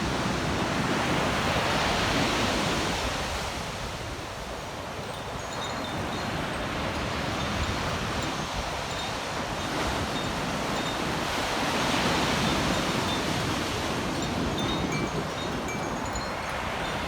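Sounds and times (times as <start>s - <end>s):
ocean surf washing onto beach: 0.0s - 17.0s
wind chimes ringing: 4.8s - 17.0s.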